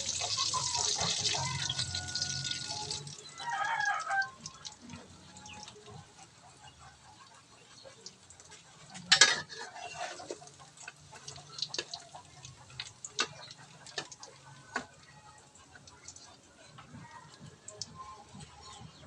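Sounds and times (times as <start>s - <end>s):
cooking utensil clattering on pan: 8.5s - 12.0s.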